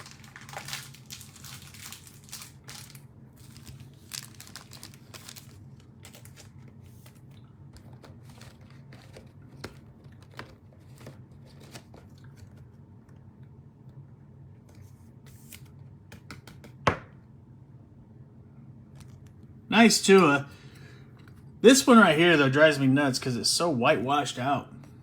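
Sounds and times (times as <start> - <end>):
plastic sleeve crinkling: 0.0 - 12.6
low steady hum: 0.0 - 25.0.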